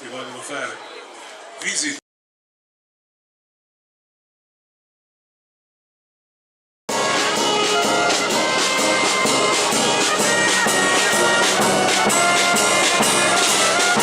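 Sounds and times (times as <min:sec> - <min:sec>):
brass music with steady beat: 0:06.9 - 0:14.0.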